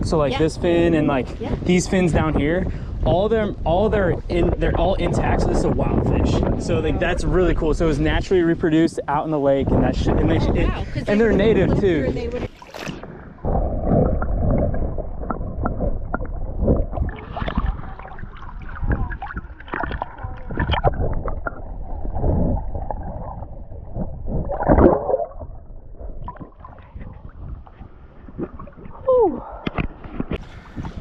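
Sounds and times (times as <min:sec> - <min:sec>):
wind rumbling on microphone: 0:00.0 - 0:31.0
water sloshing and splashing: 0:12.2 - 0:31.0.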